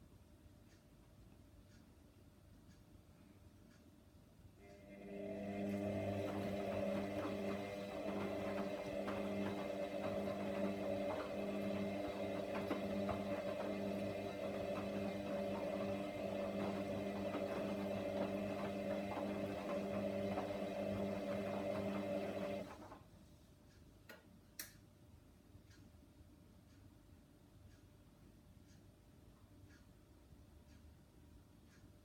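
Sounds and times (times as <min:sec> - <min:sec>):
washer dryer humming: 0:04.6 - 0:23.0.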